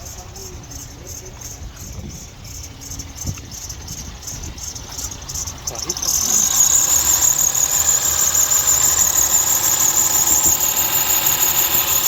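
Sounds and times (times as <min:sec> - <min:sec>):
car engine running: 0:02.8 - 0:12.0
high-pitched squeal: 0:03.6 - 0:12.0.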